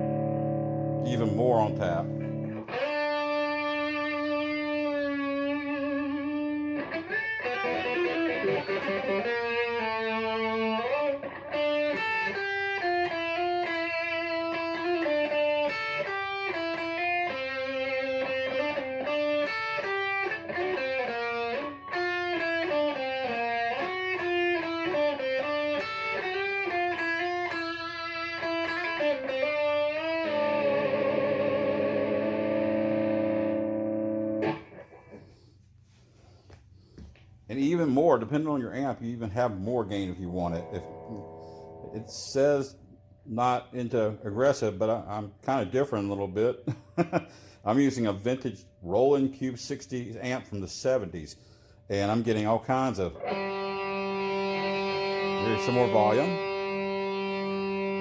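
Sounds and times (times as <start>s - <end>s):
electric guitar riffs with sustain: 0.0s - 35.3s, 40.4s - 42.4s, 53.2s - 58.0s.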